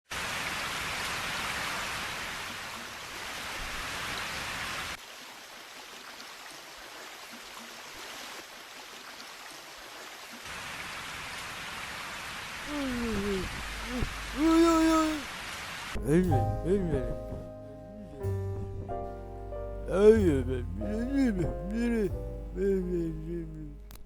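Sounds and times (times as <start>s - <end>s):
rain hissing: 10.4s - 24.0s.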